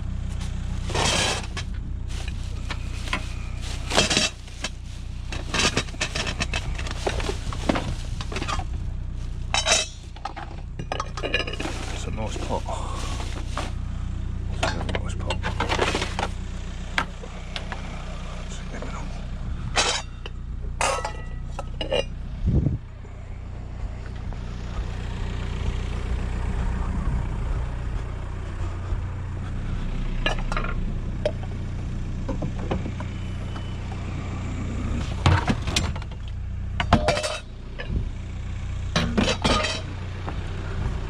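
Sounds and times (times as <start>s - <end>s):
car engine idling: 0.0s - 41.0s
metal pots clattering: 0.8s - 8.7s, 9.4s - 13.7s, 20.8s - 22.1s, 36.8s - 37.5s, 39.0s - 39.9s.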